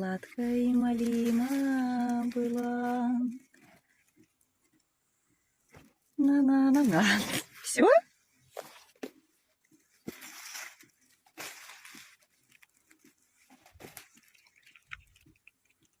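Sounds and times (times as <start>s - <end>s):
dog chewing and mouth clicks: 14.1s - 16.0s.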